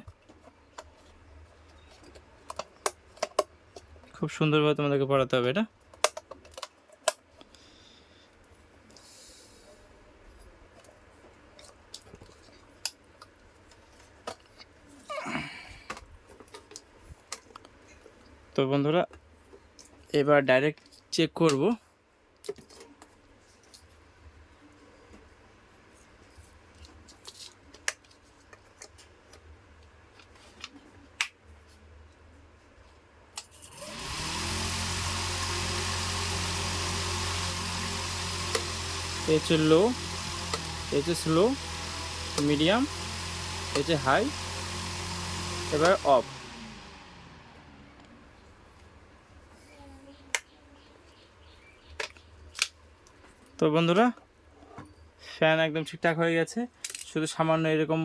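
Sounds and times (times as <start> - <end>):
plastic parts clicking and tapping: 1.9 - 3.9, 5.9 - 7.5
table fan running: 33.6 - 49.3.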